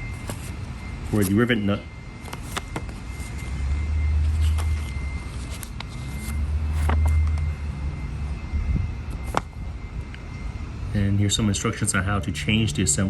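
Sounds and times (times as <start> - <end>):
handling clicks and rustles: 2.2 - 3.5.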